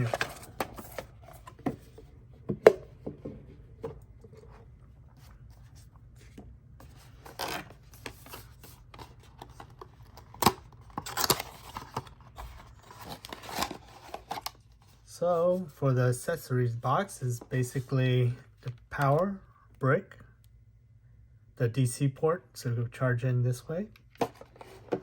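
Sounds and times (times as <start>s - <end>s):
paper packaging rustling: 0.0s - 2.1s, 4.3s - 15.0s.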